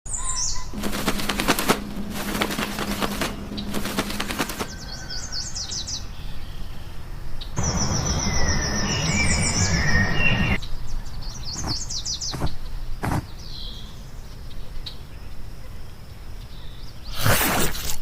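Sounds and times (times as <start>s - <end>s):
birdsong: 0.1s - 15.4s
high falling chirps: 0.5s - 5.9s, 7.6s - 10.6s
steady low hum: 0.6s - 7.0s
steady high tone: 0.7s - 4.9s
bird wings flapping: 0.7s - 5.4s, 11.6s - 13.3s.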